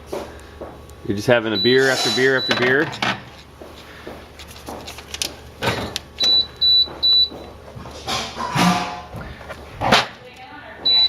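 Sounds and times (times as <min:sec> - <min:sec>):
high-pitched alarm beeps: 0:01.5 - 0:02.8, 0:05.7 - 0:07.5, 0:10.8 - 0:11.0.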